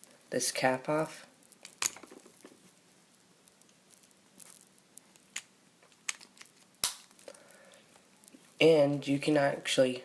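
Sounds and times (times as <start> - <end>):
plastic pencil handling noise: 3.5 - 8.6.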